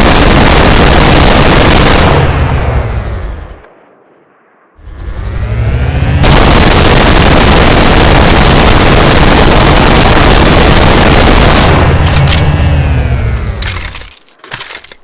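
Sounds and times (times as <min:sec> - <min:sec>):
minigun spinning and firing: 0:00.0 - 0:03.1, 0:06.2 - 0:14.1
metallic clinks: 0:13.6 - 0:15.0.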